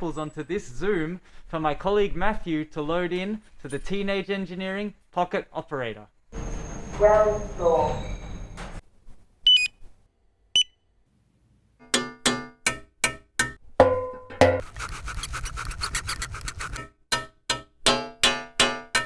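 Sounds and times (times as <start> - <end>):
short high electronic beeps: 9.5 - 9.7.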